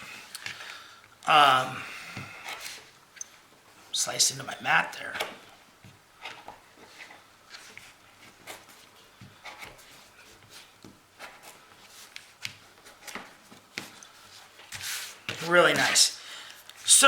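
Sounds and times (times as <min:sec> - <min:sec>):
cord rubbing on cutting mat: 0:13.8 - 0:15.9.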